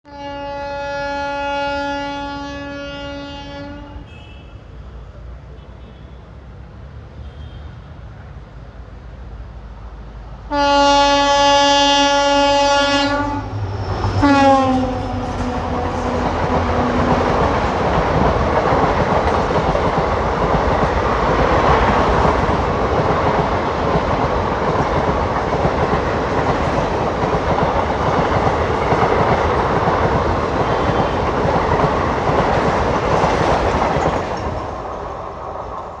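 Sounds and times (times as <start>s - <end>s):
locomotive horn blasts: 0.1s - 4.8s, 10.5s - 17.5s
train rushing and rattling past: 0.1s - 5.6s, 6.2s - 36.0s.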